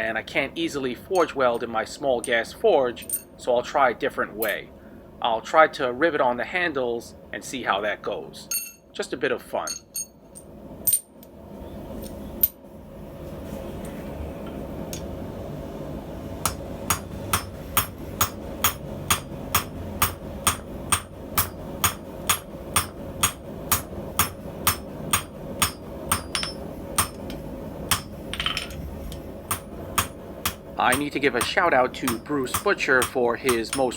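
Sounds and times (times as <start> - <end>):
gas forge burner roar: 10.6 - 33.9
hammer striking steel on anvil: 16.4 - 28.8, 29.5 - 33.9.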